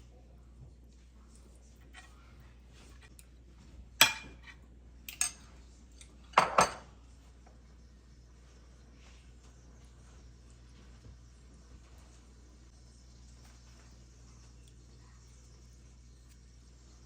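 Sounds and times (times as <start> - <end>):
kitchenware and cutlery clinking: 1.7 - 3.4, 4.0 - 7.0.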